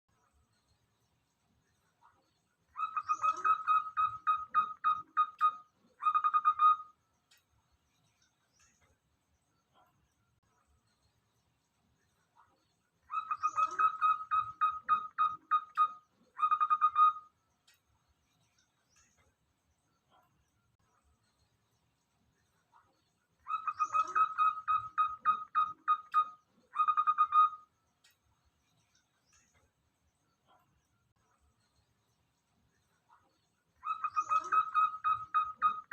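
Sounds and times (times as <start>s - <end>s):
dove cooing: 13.1s - 15.7s, 23.5s - 27.6s, 33.8s - 35.9s.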